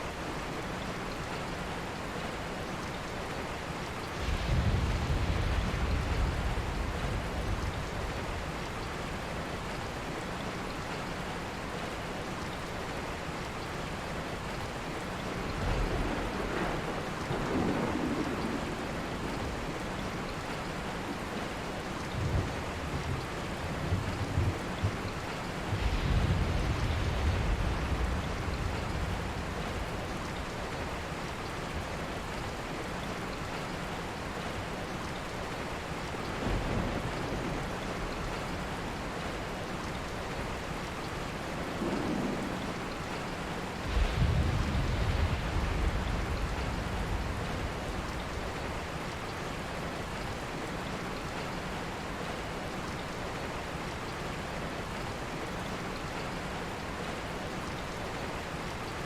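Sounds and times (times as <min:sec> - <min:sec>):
steady rain: 0:00.0 - 0:59.0
thunder rumbling: 0:04.0 - 0:09.3, 0:15.5 - 0:19.8, 0:22.2 - 0:30.8, 0:36.3 - 0:39.1, 0:41.3 - 0:49.0.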